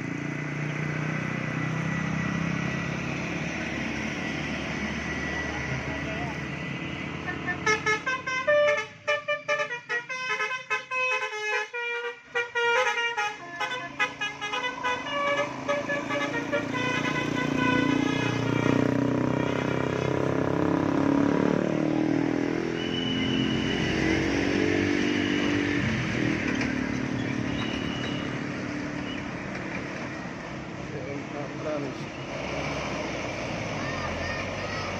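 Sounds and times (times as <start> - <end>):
traffic engine and road noise: 0.0 - 34.9
bus musical horn melody: 7.2 - 20.1.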